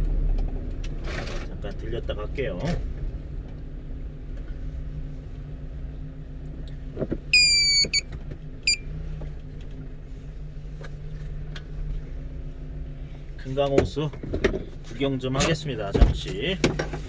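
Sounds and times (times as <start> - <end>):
click: 7.4 - 8.0
loud high tone: 7.4 - 8.0.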